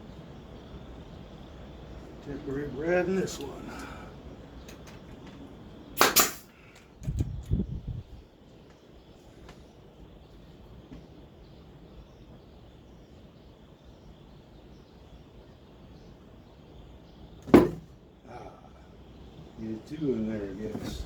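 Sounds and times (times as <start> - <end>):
low steady hiss: 0.0 - 21.0
brad nailer shot: 6.0 - 6.5.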